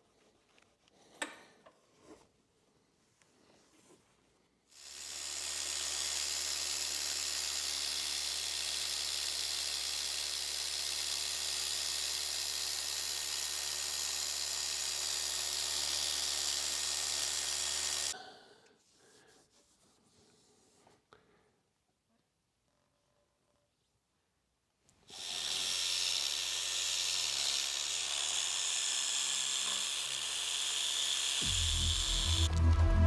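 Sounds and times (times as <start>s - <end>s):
electric polisher motor hum: 25.2s - 33.0s.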